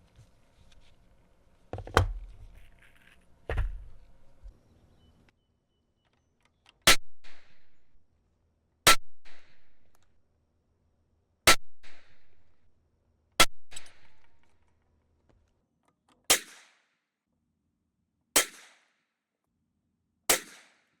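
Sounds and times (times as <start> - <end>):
gunshot echo: 6.9 - 7.7, 11.5 - 12.5
pistol shots: 11.5 - 12.3, 16.3 - 16.8, 18.4 - 18.8, 20.3 - 20.8.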